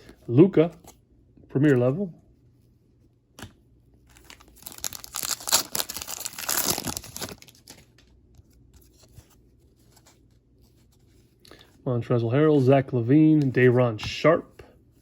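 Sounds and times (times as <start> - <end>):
foil pack tearing and crinkling: 4.1 - 7.9.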